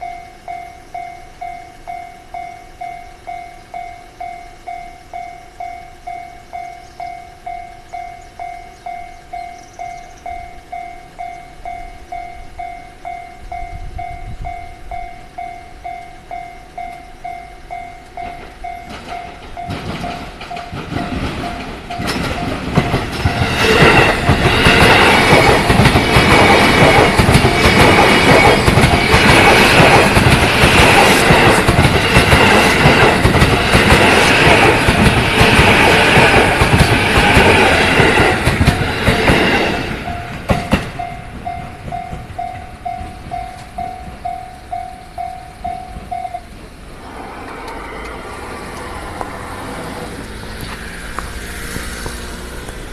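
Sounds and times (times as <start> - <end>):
level crossing bell ringing: 0.0 - 23.5, 40.1 - 46.6
train wheels clattering: 17.7 - 46.4.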